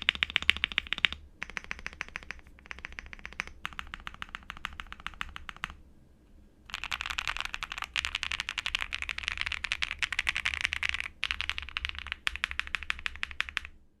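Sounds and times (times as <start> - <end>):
mechanical keyboard typing: 0.0 - 5.8, 6.7 - 13.7.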